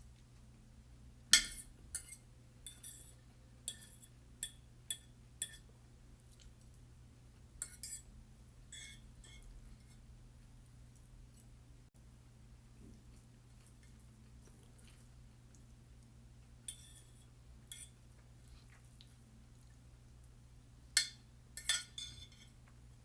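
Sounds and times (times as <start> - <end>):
cutlery clinking on a plate: 1.4 - 5.7, 21.0 - 22.5.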